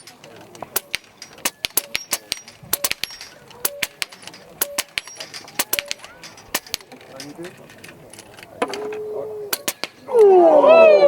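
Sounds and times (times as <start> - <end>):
steel targets ringing: 0.0 - 7.5
air rifle shots cracking: 9.5 - 10.1.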